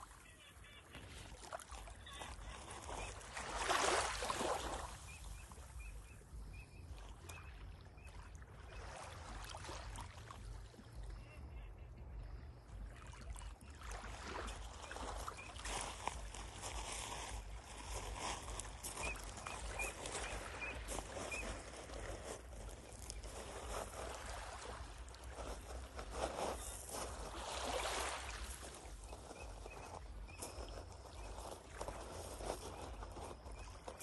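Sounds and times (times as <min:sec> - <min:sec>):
sea waves washing ashore: 0:01.1 - 0:05.6, 0:13.8 - 0:33.4.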